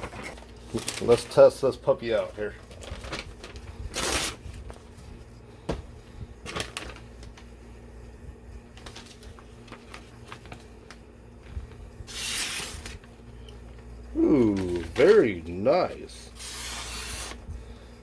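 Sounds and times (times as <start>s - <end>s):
knife slicing material: 16.4s - 17.4s.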